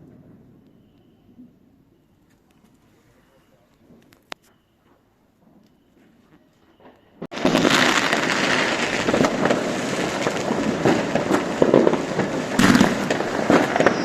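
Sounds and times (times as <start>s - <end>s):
fireworks crackling and banging: 5.4s - 14.0s.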